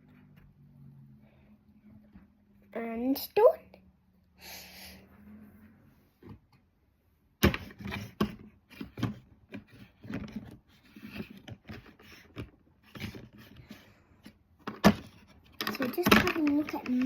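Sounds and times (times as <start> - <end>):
toy pieces knocking on table: 14.7 - 17.0.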